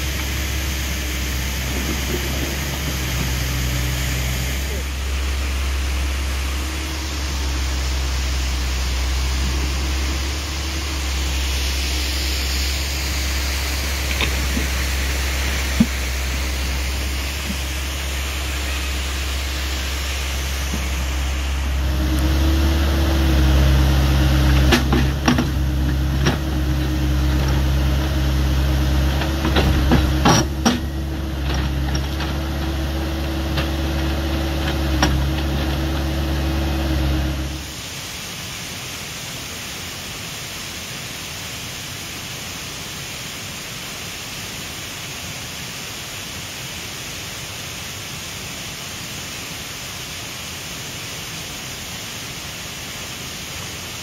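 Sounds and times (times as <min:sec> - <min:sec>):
steady rushing noise: 0:00.0 - 0:30.0
excavator diesel engine running: 0:00.0 - 0:37.8.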